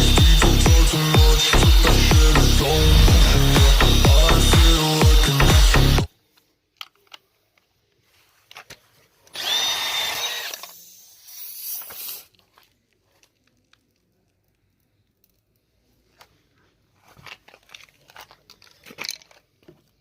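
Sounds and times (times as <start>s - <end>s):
power tool running: 0.0s - 6.1s, 9.4s - 10.8s.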